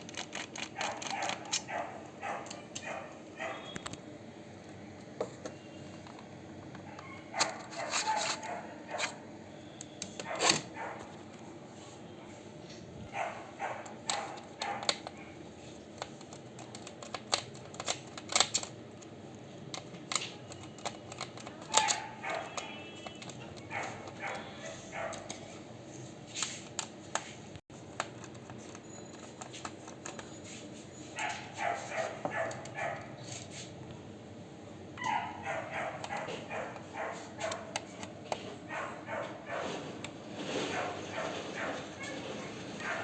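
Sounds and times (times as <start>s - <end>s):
plastic parts clicking and tapping: 0.0s - 1.7s, 13.8s - 15.2s, 15.8s - 19.1s, 19.7s - 25.6s, 26.3s - 30.3s, 36.0s - 38.5s.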